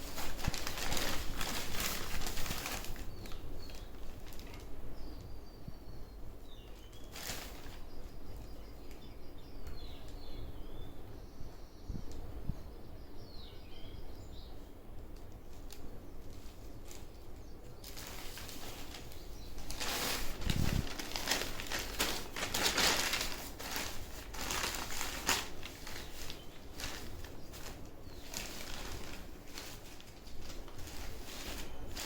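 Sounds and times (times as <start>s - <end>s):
fabric and packaging rustling: 0.0s - 4.8s, 6.8s - 9.1s, 15.5s - 32.0s.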